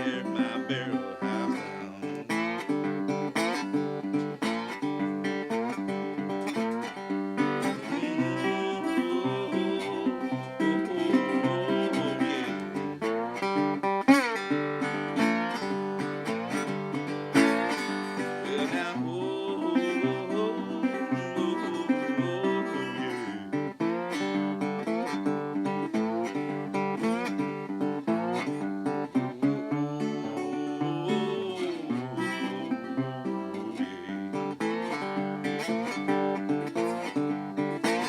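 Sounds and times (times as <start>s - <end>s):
acoustic slide guitar blues: 0.0s - 38.0s.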